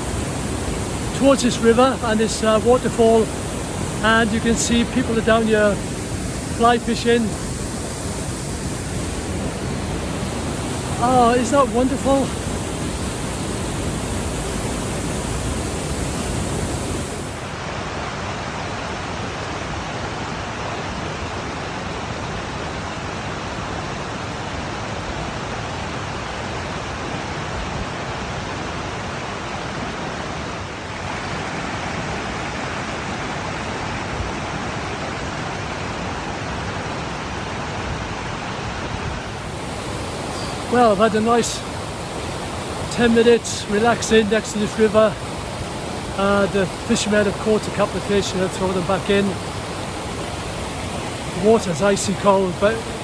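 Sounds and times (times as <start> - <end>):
waterfall and river rushing: 0.0 - 53.0.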